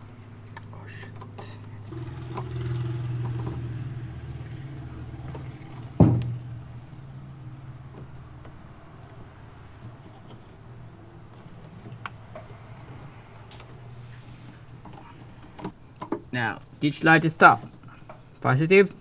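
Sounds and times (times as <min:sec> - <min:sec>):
steady low hum: 0:00.0 - 0:18.4
sharp knock: 0:06.0 - 0:06.5.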